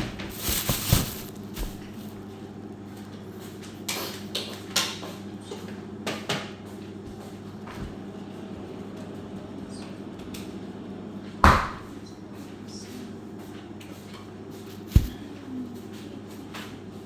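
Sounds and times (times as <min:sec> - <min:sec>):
kitchen items knocking: 0:00.0 - 0:01.9, 0:14.9 - 0:15.2
steady low hum: 0:00.0 - 0:02.8, 0:14.8 - 0:15.7.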